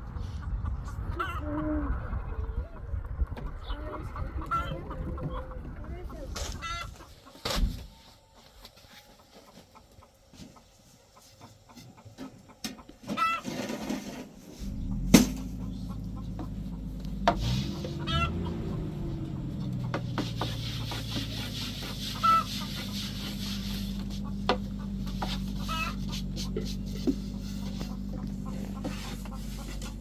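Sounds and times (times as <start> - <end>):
chickens clucking: 0.0 - 30.0
steady low hum: 14.3 - 30.0.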